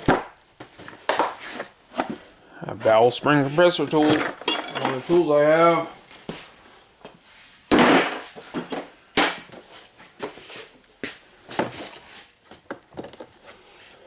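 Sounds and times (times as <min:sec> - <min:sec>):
metal tools clattering: 0:03.5 - 0:05.5
metal tools clinking: 0:03.6 - 0:05.4.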